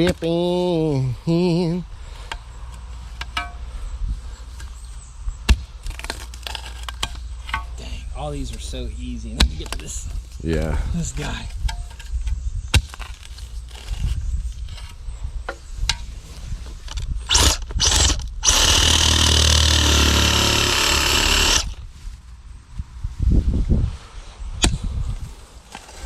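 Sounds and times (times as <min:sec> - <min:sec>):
reciprocating saw cutting root: 0:17.3 - 0:21.8.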